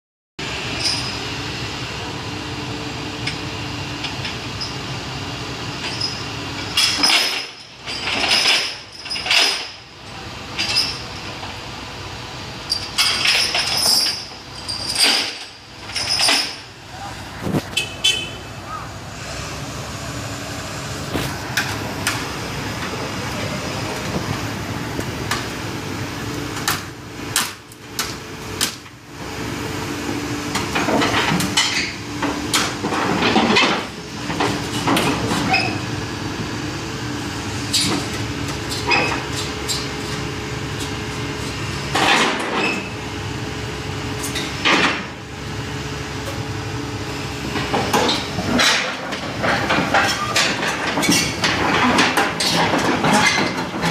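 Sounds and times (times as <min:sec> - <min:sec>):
diesel engine running: 0:00.4 - 0:53.9
metallic clanks of steel tracks: 0:05.8 - 0:11.6, 0:12.6 - 0:16.7, 0:30.5 - 0:35.9, 0:37.4 - 0:43.0, 0:44.1 - 0:45.2, 0:47.5 - 0:53.9.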